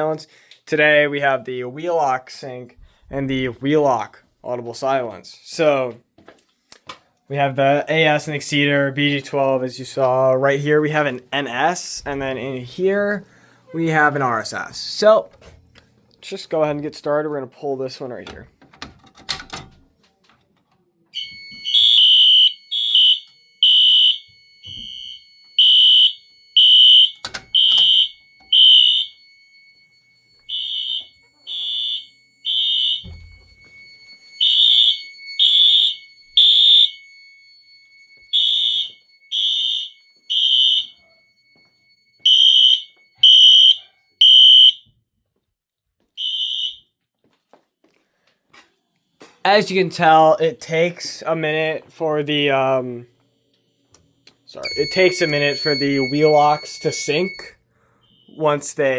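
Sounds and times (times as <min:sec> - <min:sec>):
fire alarm horn beeps: 0:21.2 - 0:45.0, 0:46.2 - 0:47.0, 0:54.5 - 0:58.5.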